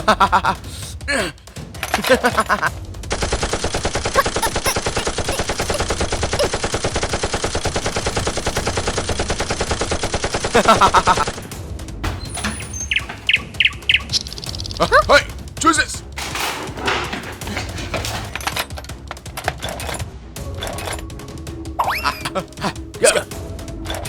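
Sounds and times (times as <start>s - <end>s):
rapid automatic gunfire: 3.0s - 11.6s.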